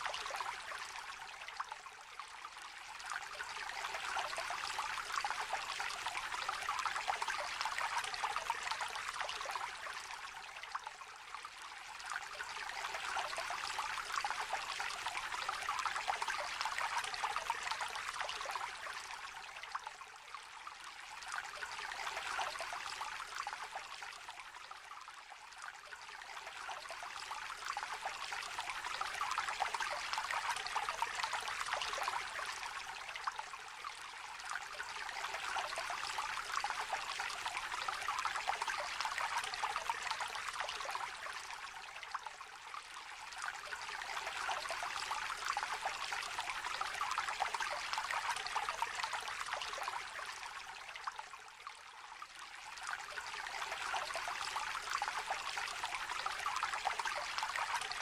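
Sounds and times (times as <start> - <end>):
river trickling and babbling: 0.0 - 58.0.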